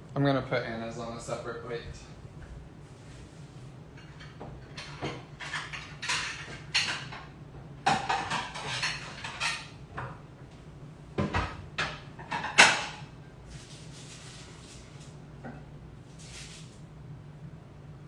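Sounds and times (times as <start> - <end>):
plates and utensils clinking: 4.0 - 9.8, 11.2 - 13.1.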